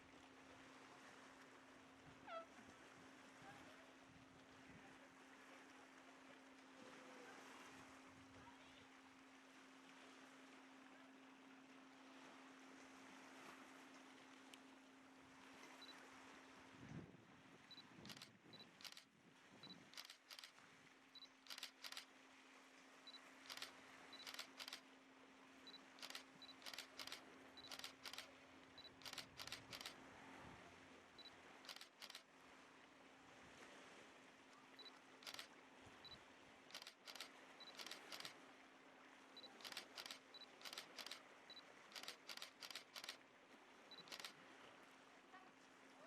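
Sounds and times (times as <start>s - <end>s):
faint sharp clicks: 18.1s - 19.1s, 19.9s - 20.6s, 21.5s - 22.1s, 23.5s - 24.8s, 26.0s - 30.0s, 31.7s - 32.2s, 35.2s - 35.5s, 36.7s - 38.4s, 39.5s - 41.2s, 41.9s - 43.2s, 43.9s - 44.4s.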